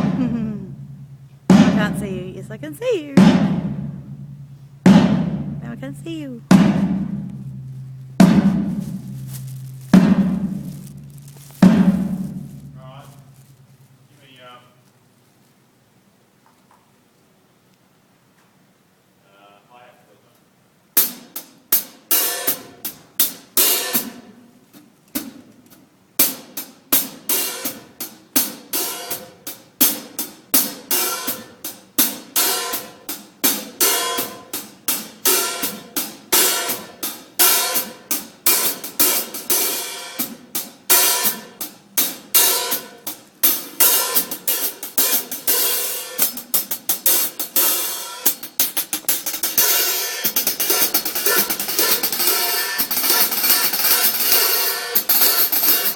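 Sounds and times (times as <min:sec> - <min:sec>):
drum kit playing: 0:00.0 - 0:14.4, 0:27.0 - 0:55.9
hi-hat and cymbals: 0:26.2 - 0:55.9.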